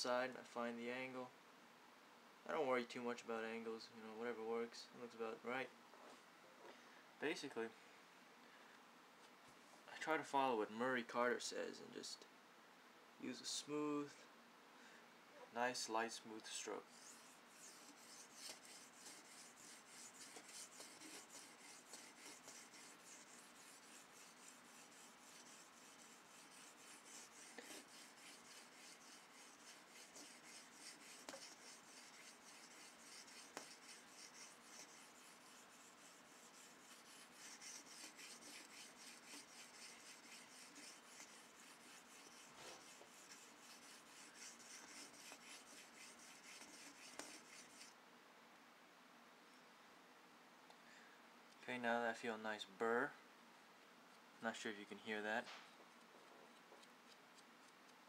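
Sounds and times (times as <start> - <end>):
knife rasping on sharpening stone: 17.0 - 47.8.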